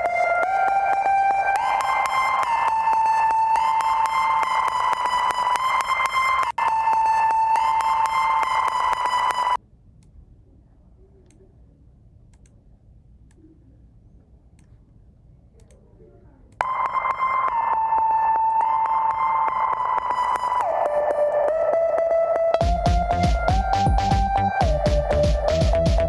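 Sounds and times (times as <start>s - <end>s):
electronic ringtone beeping: 0.0s - 9.6s, 16.6s - 26.0s
faint clicks: 12.3s - 12.6s, 14.5s - 14.9s, 15.5s - 17.7s.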